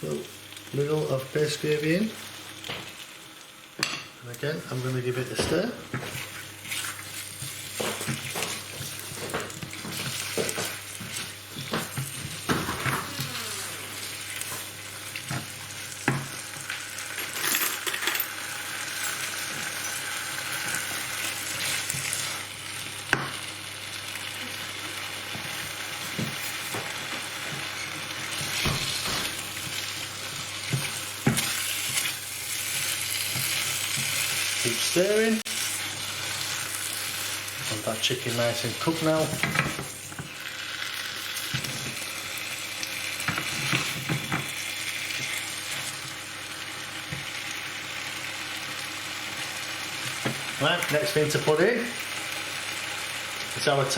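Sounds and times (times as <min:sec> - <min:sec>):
curry sizzling in a pan: 0:00.0 - 0:17.4, 0:18.3 - 0:53.9
spatula knocking and scraping pan: 0:30.6 - 0:32.2.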